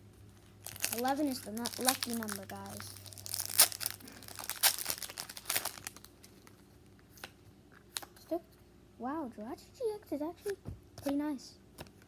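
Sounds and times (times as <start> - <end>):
foil wrapper crinkling: 0.4 - 6.6.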